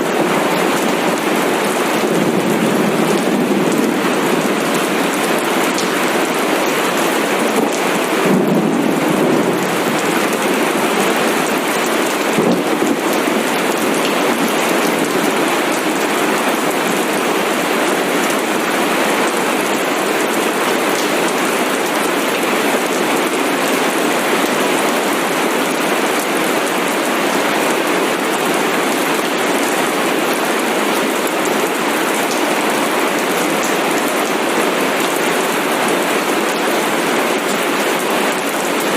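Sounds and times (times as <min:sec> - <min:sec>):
steady rain: 0:00.0 - 0:38.9
low thunder rumbling: 0:01.8 - 0:05.0, 0:08.2 - 0:10.8.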